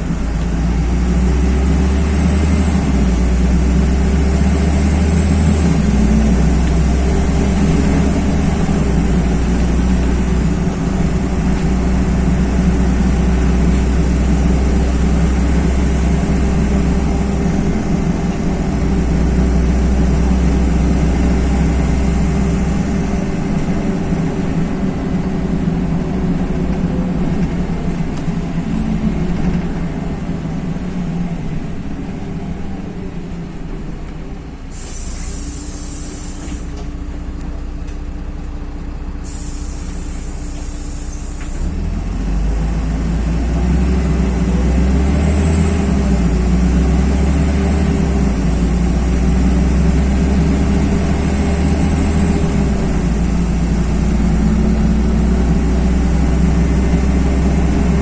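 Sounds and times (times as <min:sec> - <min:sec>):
diesel bus engine drone: 0:00.0 - 0:58.0
compressed air hiss: 0:34.7 - 0:36.8, 0:39.2 - 0:41.6.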